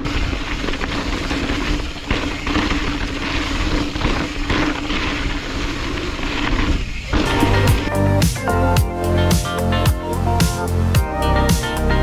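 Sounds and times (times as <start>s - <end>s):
wind on microphone: 0.0s - 8.3s
bike rolling trail noise: 0.0s - 12.0s.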